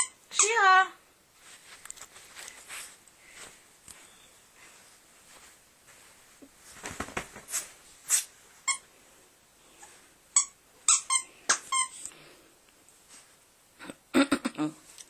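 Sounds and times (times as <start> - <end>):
squeaky dog toy squeaking: 0.0 - 0.8, 10.4 - 12.0.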